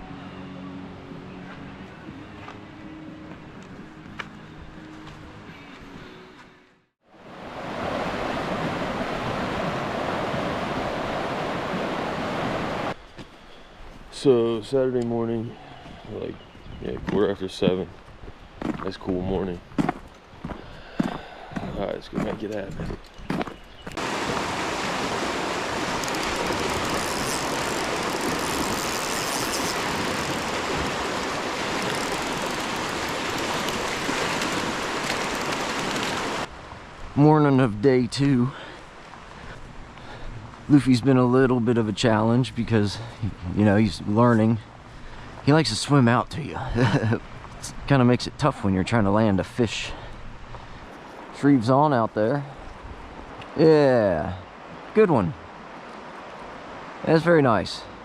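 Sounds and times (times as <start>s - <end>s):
river water rushing over rocks: 7.2s - 13.0s, 24.0s - 36.9s.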